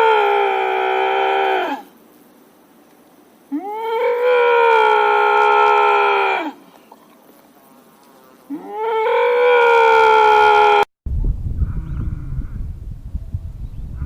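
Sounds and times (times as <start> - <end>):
horn-like animal call: 0.0 - 1.9, 3.5 - 6.8, 8.4 - 10.9
low rumbling noise: 11.1 - 14.0.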